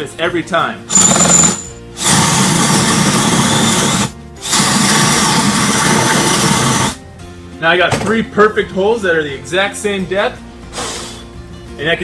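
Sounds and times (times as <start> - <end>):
power drill boring into wood: 0.9 - 7.0.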